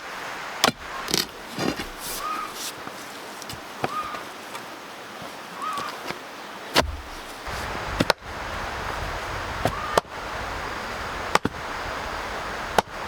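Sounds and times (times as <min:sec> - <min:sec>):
sharp knocks: 0:06.8 - 0:07.2.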